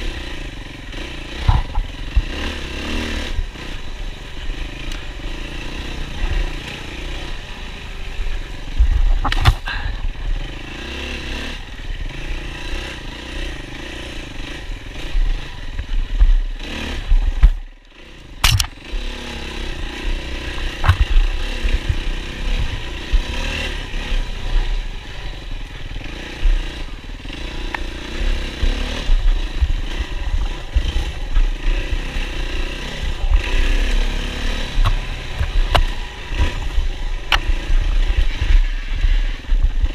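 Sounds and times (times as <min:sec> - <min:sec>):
motorcycle engine revving: 0:00.0 - 0:39.9
bike knocks and clatter: 0:17.1 - 0:17.7, 0:18.4 - 0:18.8, 0:20.5 - 0:22.0.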